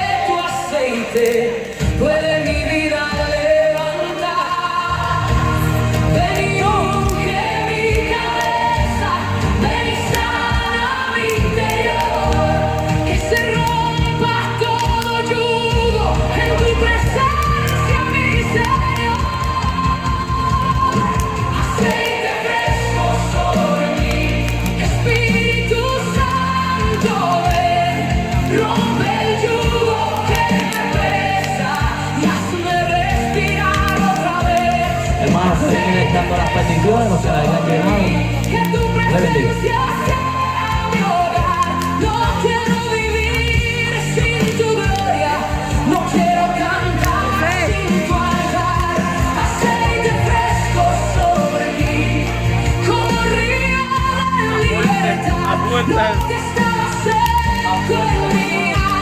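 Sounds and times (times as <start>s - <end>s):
choir-like singing: 0.0s - 59.0s
band with bass and drums: 5.0s - 59.0s.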